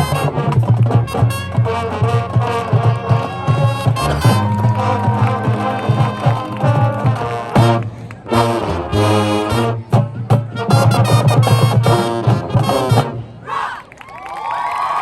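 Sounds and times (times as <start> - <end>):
marching drums: 0.0 - 8.0
brass band chord stabs: 0.0 - 9.8, 10.6 - 13.2.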